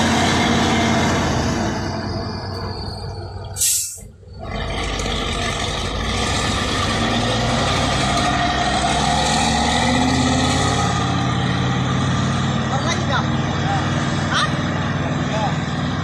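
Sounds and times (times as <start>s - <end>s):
diesel truck engine running: 0.0s - 16.0s
air brakes hissing: 3.5s - 4.1s.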